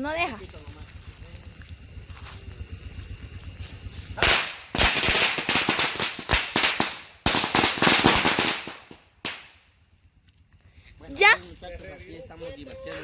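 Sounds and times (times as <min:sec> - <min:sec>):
string of firecrackers crackling: 0:00.0 - 0:13.0.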